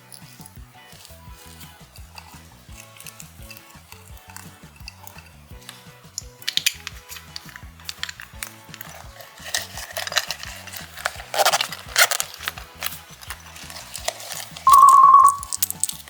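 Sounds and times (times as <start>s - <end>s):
background music: 0.0s - 16.0s
slime squishing: 0.0s - 16.0s
high steady tone: 14.7s - 15.5s.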